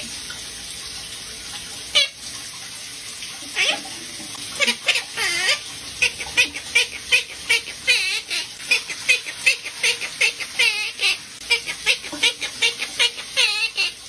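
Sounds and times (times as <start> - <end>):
running tap water: 0.0 - 14.0
parrot warbling and chirping: 1.9 - 2.3, 3.5 - 14.0.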